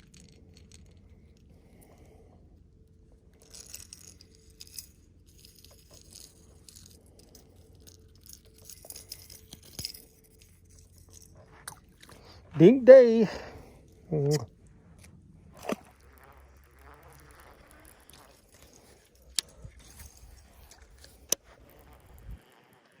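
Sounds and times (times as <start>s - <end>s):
fishing tackle clicks and clinks: 0.0s - 2.0s, 3.4s - 13.4s, 14.0s - 14.5s, 17.2s - 22.4s
faint steady hum: 0.0s - 23.0s.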